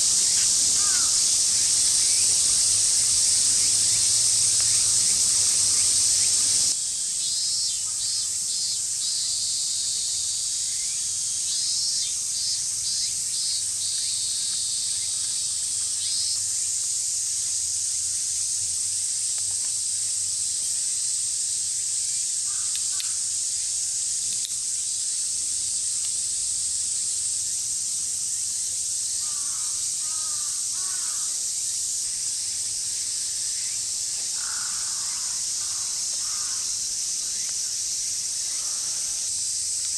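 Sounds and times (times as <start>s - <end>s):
high-pitched insect chorus: 0.0s - 39.9s
crows cawing: 0.8s - 1.4s, 22.5s - 23.2s, 29.2s - 31.4s, 34.3s - 36.8s, 38.6s - 39.2s.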